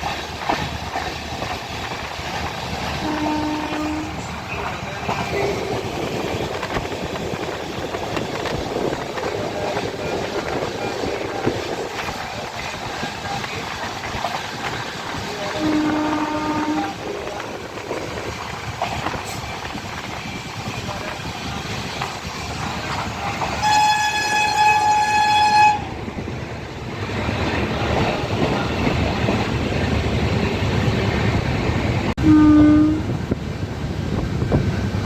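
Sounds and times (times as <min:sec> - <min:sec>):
train rumbling on rails: 0:00.0 - 0:35.0
low train horn note: 0:03.0 - 0:04.2, 0:15.4 - 0:17.1, 0:23.6 - 0:25.9, 0:32.2 - 0:33.1
high train horn blast: 0:03.0 - 0:04.3, 0:15.3 - 0:17.4, 0:23.5 - 0:26.0, 0:32.2 - 0:33.1.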